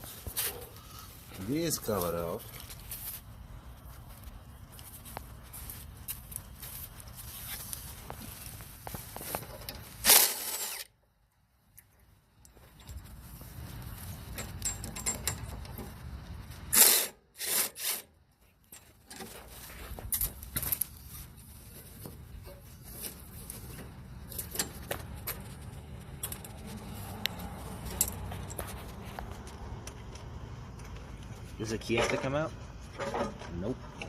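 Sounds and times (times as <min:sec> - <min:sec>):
tool and bolts clicking and rattling: 0:14.2 - 0:16.1, 0:21.9 - 0:28.9, 0:31.8 - 0:34.0.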